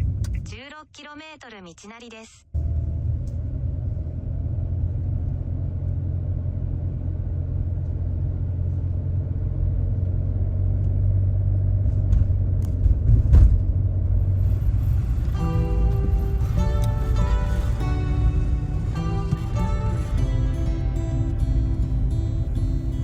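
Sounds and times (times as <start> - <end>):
car interior road rumble: 0.0 - 0.7, 2.6 - 23.0
car bump: 11.8 - 13.8.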